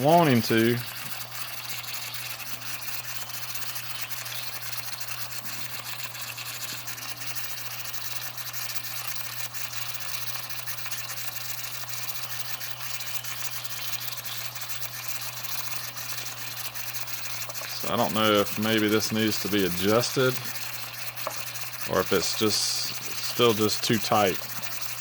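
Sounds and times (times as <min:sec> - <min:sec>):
steam hissing from toy engine: 0:00.0 - 0:25.0.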